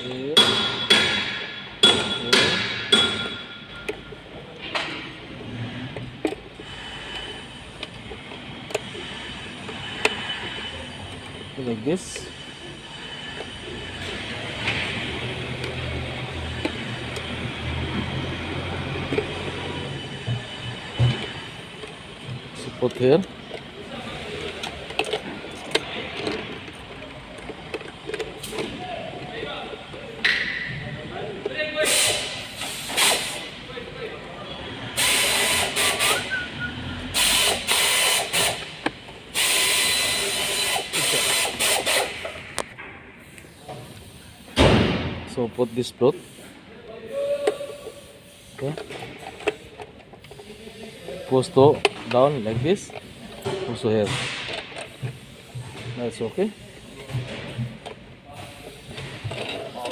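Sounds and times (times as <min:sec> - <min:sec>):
rasping ratchet-like mechanical noise: 0:05.4 - 0:30.0, 0:35.0 - 0:36.4, 0:37.1 - 0:42.4, 0:47.8 - 0:59.9.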